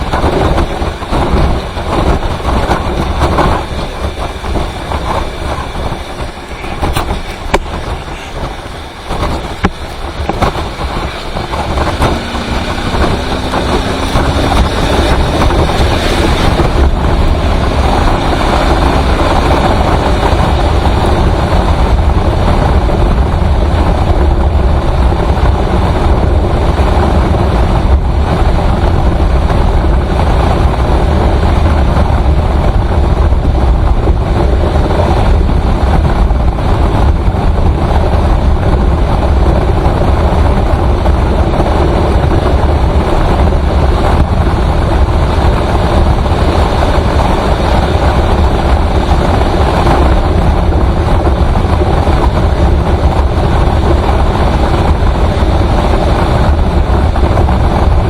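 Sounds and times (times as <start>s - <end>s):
low rumble: 0.0s - 58.0s
vehicle engine and road noise: 0.0s - 58.0s
rising engine tone: 10.6s - 19.5s.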